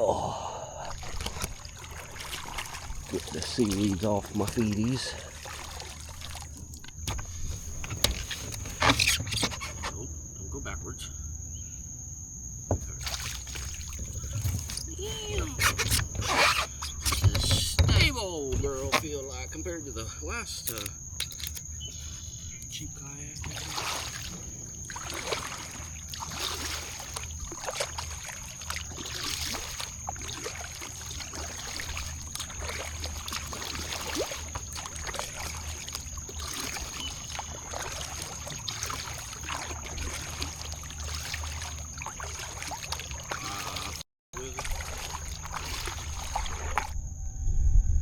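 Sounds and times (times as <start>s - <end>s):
paddle strokes in water: 0.8s - 9.9s, 23.4s - 47.0s
water trickling off paddle: 0.8s - 9.9s, 12.8s - 19.1s, 23.4s - 47.0s
wind rumble on microphone: 45.9s - 48.0s.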